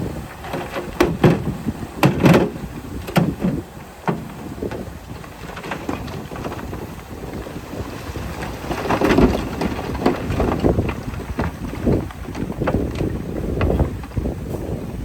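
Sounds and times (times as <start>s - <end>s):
loud clunks and knocks: 0.4s - 6.8s.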